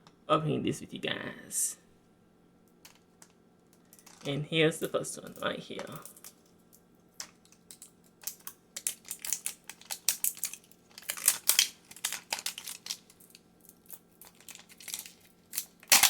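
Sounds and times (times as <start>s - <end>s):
plastic capsule clicks and crinkling: 7.2s - 16.0s.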